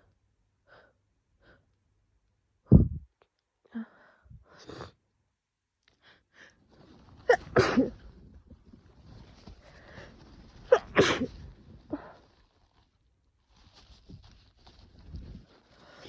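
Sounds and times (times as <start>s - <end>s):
woman sneezing: 10.7s - 11.3s.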